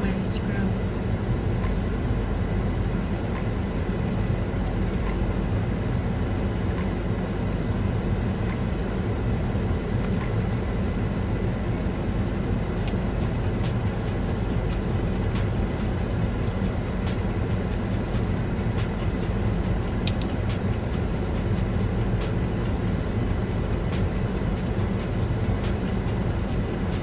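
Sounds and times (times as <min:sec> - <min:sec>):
low rumble inside car cabin: 0:00.0 - 0:27.0
faint sharp clicks: 0:20.0 - 0:20.7.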